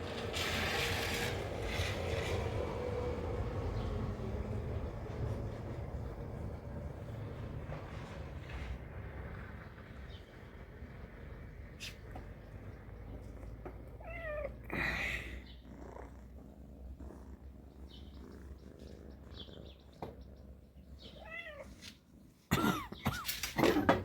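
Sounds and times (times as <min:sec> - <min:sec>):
cat meowing: 0:14.0 - 0:15.0, 0:21.0 - 0:21.8.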